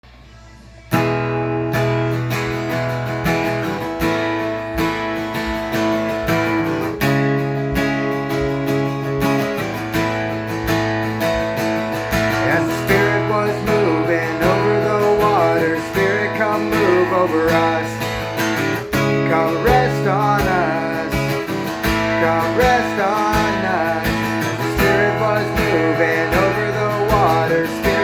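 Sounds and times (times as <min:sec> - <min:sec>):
acoustic guitar strumming: 0:00.8 - 0:28.0.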